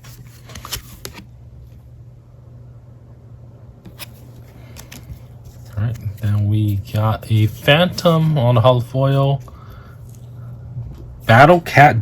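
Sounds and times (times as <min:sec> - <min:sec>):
steady low hum: 0:00.0 - 0:12.0
cards tapping and rustling: 0:03.9 - 0:10.3.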